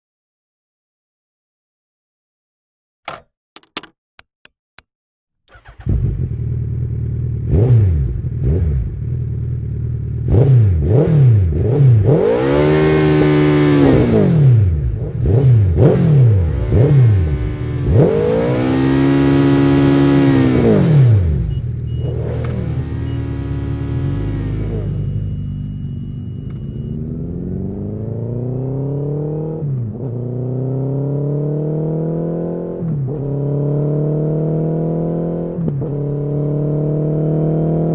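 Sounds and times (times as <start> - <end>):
starter clicks: 3.1 - 4.9
motorcycle engine revving: 5.5 - 37.9.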